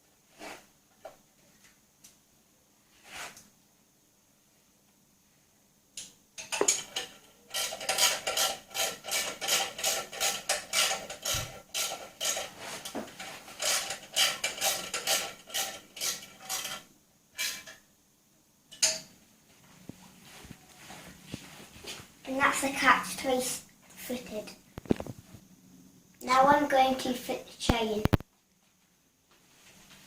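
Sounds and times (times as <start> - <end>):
metal tool ratcheting: 6.4 - 12.5, 13.6 - 16.8.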